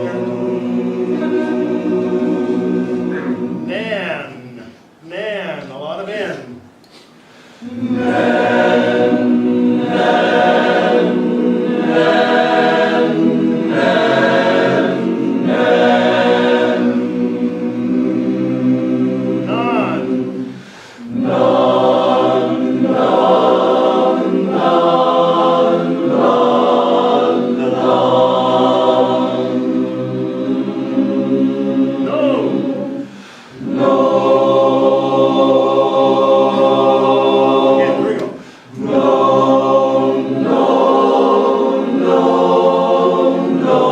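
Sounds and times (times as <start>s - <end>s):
barbershop chorus singing a cappella: 0.0s - 4.7s, 7.5s - 43.9s.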